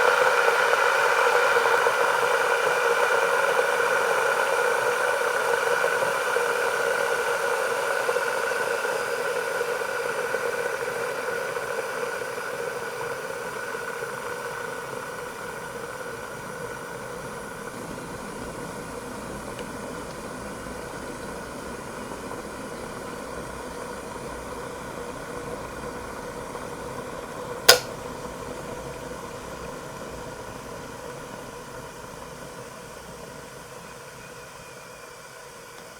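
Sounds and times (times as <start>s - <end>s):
kettle boiling water: 0.0s - 35.9s
kettle switch click: 27.7s - 27.9s.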